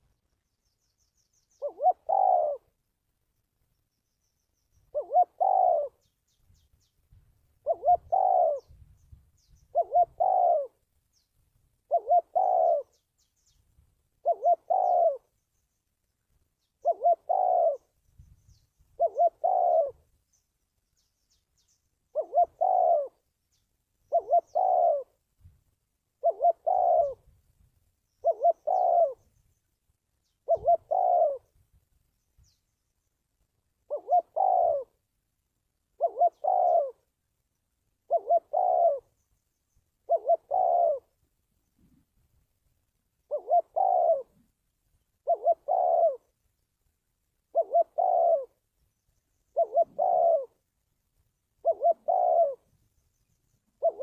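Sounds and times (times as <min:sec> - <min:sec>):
dove cooing: 0:01.5 - 0:02.8, 0:04.8 - 0:06.2, 0:07.6 - 0:10.8, 0:11.8 - 0:13.2, 0:14.2 - 0:15.4, 0:16.7 - 0:18.0, 0:18.9 - 0:20.1, 0:22.1 - 0:23.3, 0:24.0 - 0:25.2, 0:26.2 - 0:27.3, 0:28.2 - 0:29.3, 0:30.2 - 0:31.5, 0:33.8 - 0:35.1, 0:35.9 - 0:37.1, 0:38.0 - 0:39.2, 0:40.0 - 0:41.2, 0:43.2 - 0:44.5, 0:45.2 - 0:46.3, 0:47.4 - 0:48.6, 0:49.5 - 0:50.7, 0:51.5 - 0:52.7, 0:53.7 - 0:54.0.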